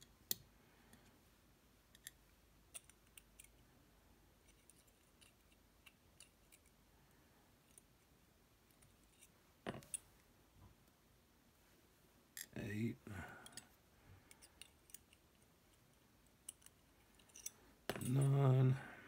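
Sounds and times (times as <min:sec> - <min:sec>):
small metal parts clicking: 0:01.9 - 0:03.6, 0:04.4 - 0:06.7, 0:16.4 - 0:18.4.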